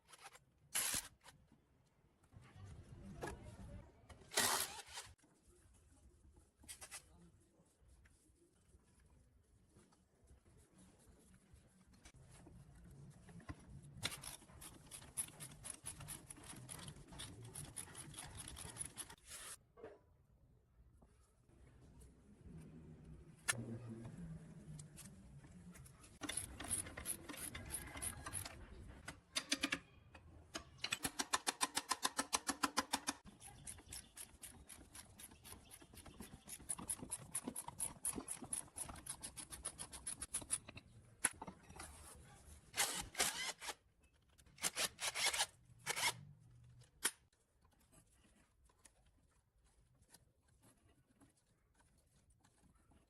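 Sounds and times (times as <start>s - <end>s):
tool scraping: 33.0s - 43.8s, 44.6s - 46.2s.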